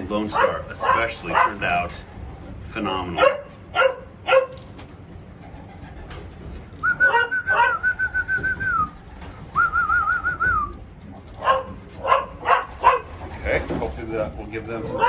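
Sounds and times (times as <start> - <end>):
dog barking: 0.2 - 2.0, 3.2 - 4.6, 7.0 - 7.9, 11.4 - 13.4
person whistling: 6.8 - 8.9, 9.6 - 10.7.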